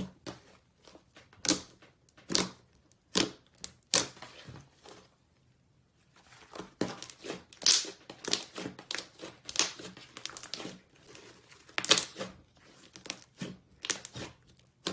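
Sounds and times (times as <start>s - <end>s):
slime crackling and popping: 6.8s - 14.9s.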